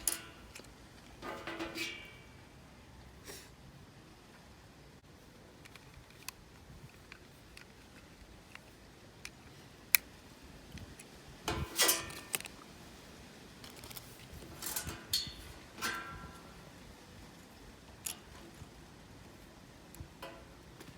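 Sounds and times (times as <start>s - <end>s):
plastic parts clicking: 5.6s - 10.1s, 12.0s - 12.6s, 13.6s - 15.3s.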